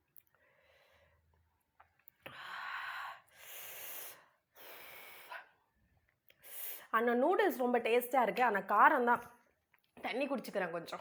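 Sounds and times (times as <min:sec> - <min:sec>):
woman breathing heavily: 0:02.3 - 0:05.6.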